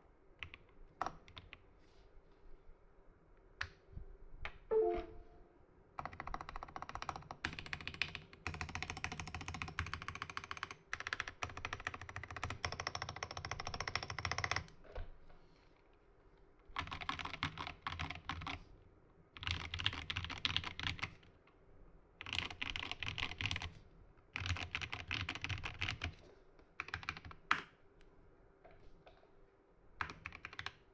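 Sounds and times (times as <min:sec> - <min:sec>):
mechanical keyboard typing: 0:06.0 - 0:14.7, 0:16.8 - 0:18.6, 0:19.4 - 0:21.1, 0:22.2 - 0:23.7, 0:24.4 - 0:26.1, 0:26.8 - 0:27.7, 0:30.0 - 0:30.8.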